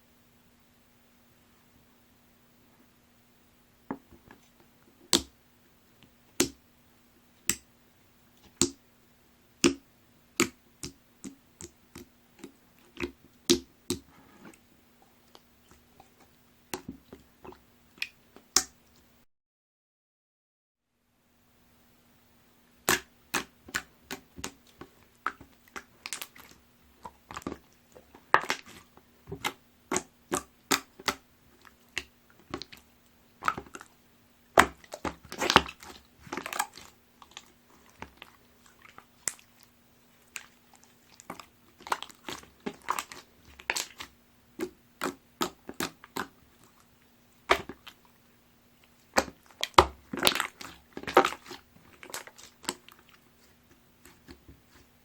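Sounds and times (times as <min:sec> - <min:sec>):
slime squeezed by hand: 0:34.6 - 0:46.9, 0:49.0 - 0:55.0.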